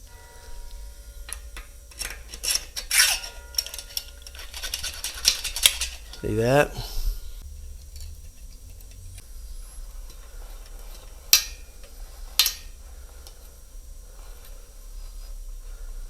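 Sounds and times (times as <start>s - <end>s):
sharp clicks of axle and springs: 0.0s - 6.2s, 7.4s - 13.4s
faint low hum: 0.0s - 16.0s.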